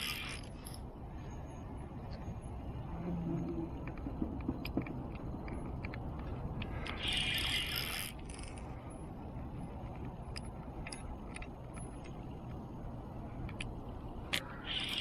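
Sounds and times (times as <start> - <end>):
fishing reel ratcheting: 0.0 - 0.6, 6.8 - 8.6
steady low rumble: 0.0 - 15.0.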